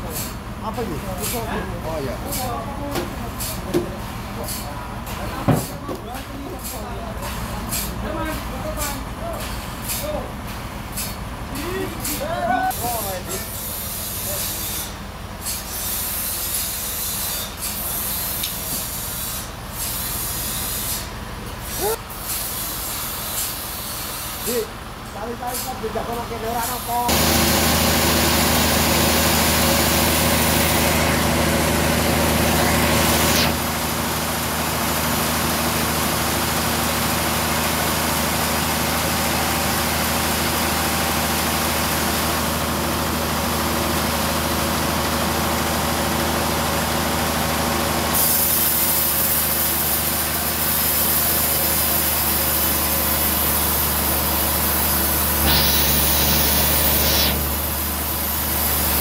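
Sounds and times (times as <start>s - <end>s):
saw blade cutting hiss: 0.0s - 0.4s, 6.6s - 8.0s, 9.4s - 10.2s, 10.9s - 11.2s, 12.0s - 24.7s, 25.5s - 25.8s, 32.3s - 33.7s, 48.1s - 59.0s
sawmill machine drone: 6.2s - 59.0s.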